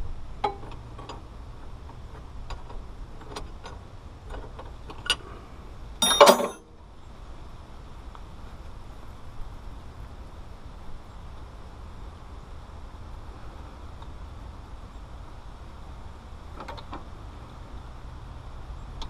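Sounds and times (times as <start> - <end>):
loud metallic clatter with ringing: 6.0 - 6.6.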